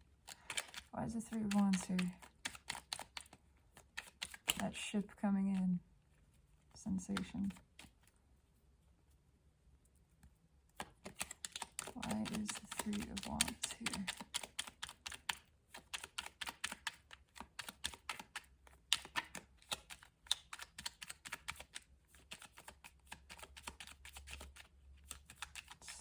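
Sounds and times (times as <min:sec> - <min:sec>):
cards being shuffled: 0:00.1 - 0:04.6, 0:06.6 - 0:08.2, 0:10.7 - 0:26.0.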